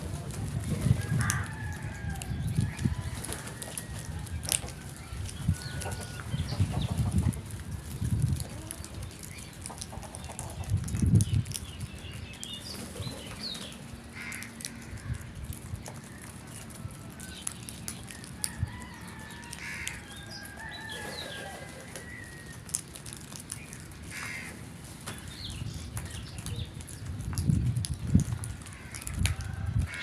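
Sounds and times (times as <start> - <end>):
birds chirping: 8.1 - 22.8.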